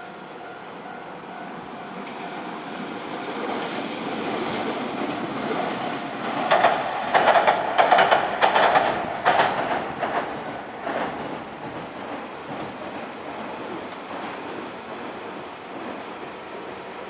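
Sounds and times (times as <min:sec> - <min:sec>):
train rumble: 0:00.0 - 0:17.0
train wheels clacking over rail joints: 0:04.3 - 0:15.1.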